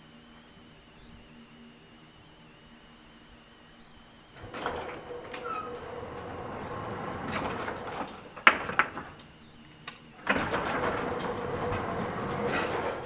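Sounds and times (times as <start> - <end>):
elevator machinery rumbling: 4.4 - 9.4, 10.2 - 13.0
click: 9.2 - 10.1.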